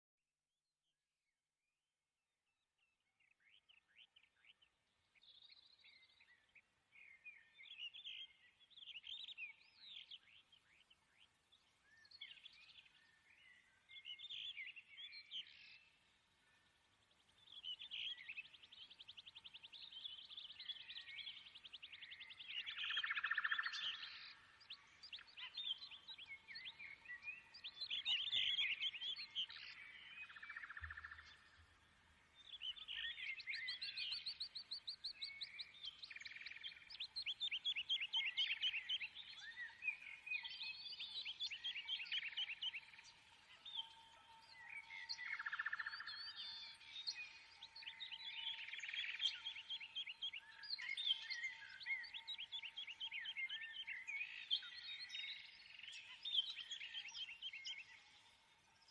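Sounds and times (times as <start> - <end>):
birds chirping and trilling: 3.2 - 58.9
faint steady tone: 14.6 - 58.9.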